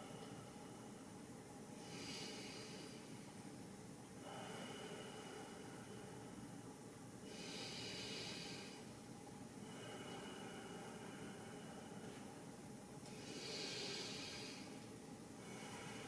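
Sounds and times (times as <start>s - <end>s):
person breathing deeply: 1.8s - 3.2s, 4.2s - 6.4s, 7.2s - 8.9s, 9.6s - 12.2s, 13.1s - 14.8s, 15.4s - 16.0s.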